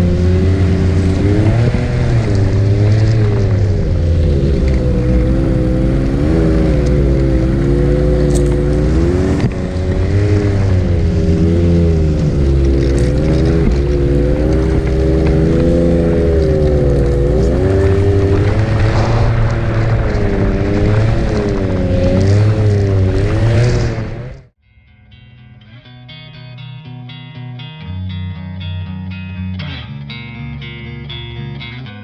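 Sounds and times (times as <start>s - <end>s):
snowmobile engine revving: 0.0s - 24.5s.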